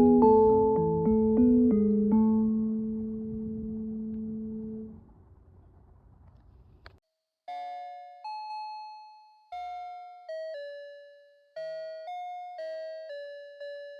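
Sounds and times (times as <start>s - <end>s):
outdoor background noise: 2.1s - 7.0s.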